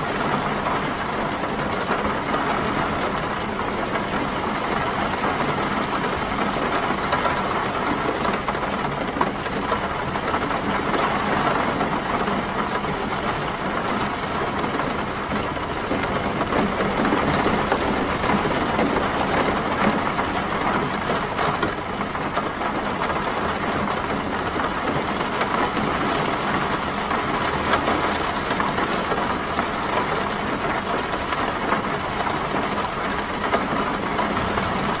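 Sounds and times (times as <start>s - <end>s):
rain falling on a car: 0.0s - 35.0s.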